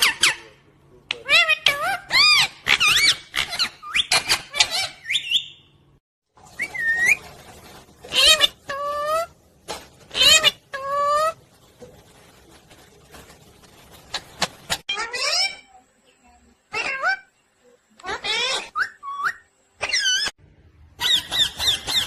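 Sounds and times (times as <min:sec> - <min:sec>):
parrot squawking and chirping: 0:00.0 - 0:00.6, 0:01.2 - 0:05.7, 0:06.6 - 0:07.3, 0:08.0 - 0:09.4, 0:10.1 - 0:11.4, 0:14.1 - 0:15.7, 0:16.7 - 0:17.3, 0:18.0 - 0:20.3, 0:21.0 - 0:22.0.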